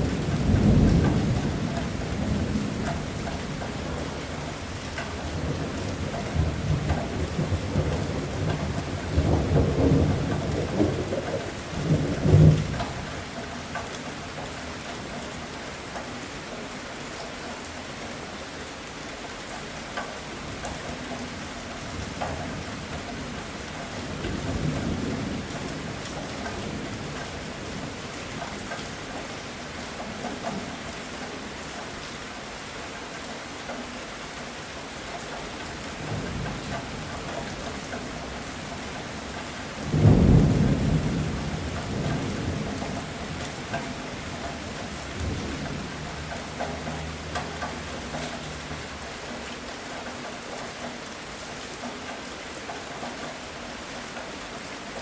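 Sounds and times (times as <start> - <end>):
heavy rain: 0.0 - 55.0
rolling thunder: 5.3 - 13.2, 35.9 - 46.3.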